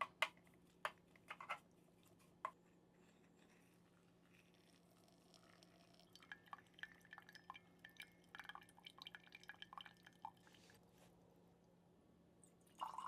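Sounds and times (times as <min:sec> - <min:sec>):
coffee dripping: 0:04.2 - 0:10.8, 0:12.4 - 0:13.0.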